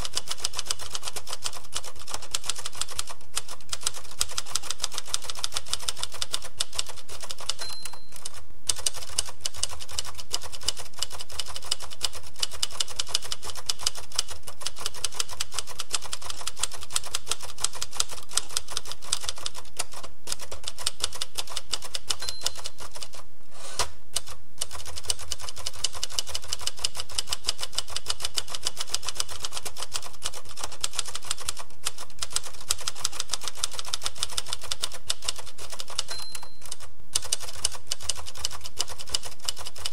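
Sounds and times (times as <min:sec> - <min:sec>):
typewriter keys clicking: 0:00.0 - 0:23.2, 0:24.2 - 0:39.9
typewriter bell ding: 0:07.4 - 0:08.4, 0:22.2 - 0:22.9, 0:36.0 - 0:36.8.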